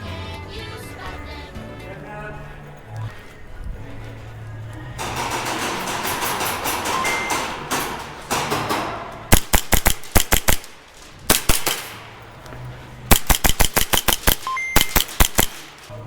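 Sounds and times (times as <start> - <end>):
airsoft guns firing: 5.0 - 16.0.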